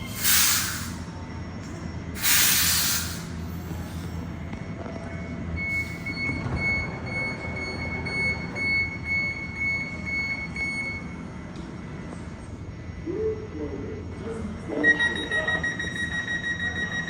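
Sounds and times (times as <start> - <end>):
electric train humming: 0.0 - 17.0
high electronic warning beeps: 4.9 - 11.2, 14.7 - 17.0.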